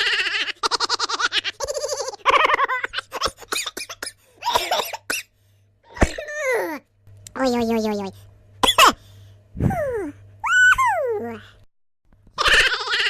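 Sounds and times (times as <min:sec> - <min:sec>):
giggling and cackling laughs: 0:00.0 - 0:03.5, 0:12.4 - 0:13.0.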